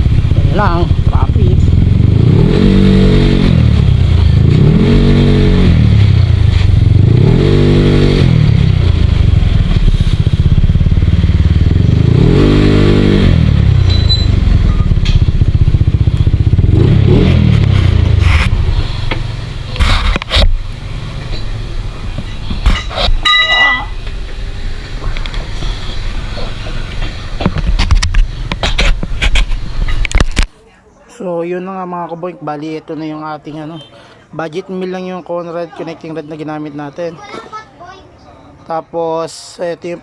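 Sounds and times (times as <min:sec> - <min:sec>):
motorcycle engine revving: 0:00.0 - 0:23.3
clicks and clatter: 0:26.9 - 0:30.5.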